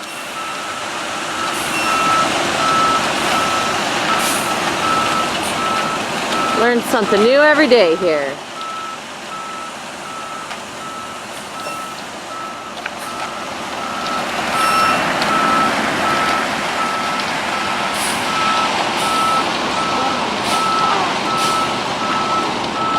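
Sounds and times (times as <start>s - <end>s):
truck reversing alarm beeping: 0.0s - 22.9s
truck engine running: 0.1s - 22.9s.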